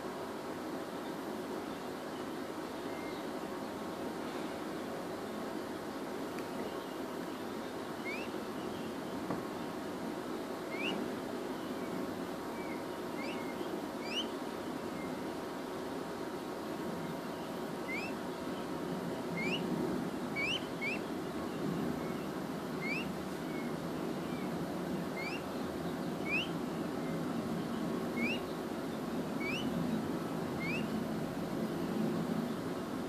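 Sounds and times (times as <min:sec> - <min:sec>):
low background noise: 0:00.0 - 0:33.0
peachick peeping: 0:06.4 - 0:09.7, 0:10.6 - 0:15.3, 0:17.0 - 0:31.1.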